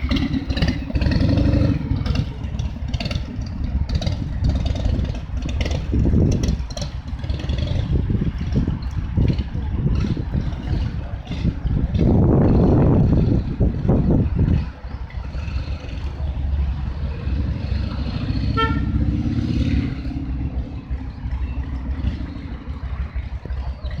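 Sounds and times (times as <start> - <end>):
motorcycle engines revving: 0.0 - 24.0
short horn toot: 18.5 - 19.1.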